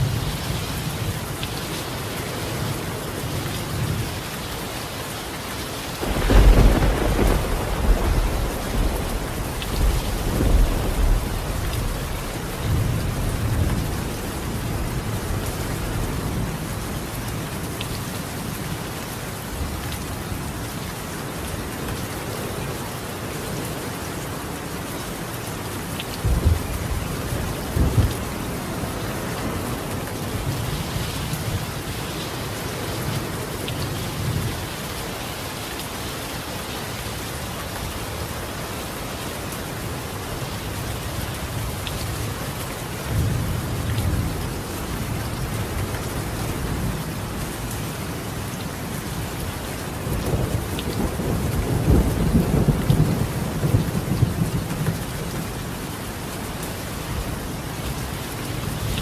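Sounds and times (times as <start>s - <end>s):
heavy rain on a tile roof: 0.0s - 59.0s
thunder rumbling: 6.0s - 15.4s, 50.3s - 54.9s.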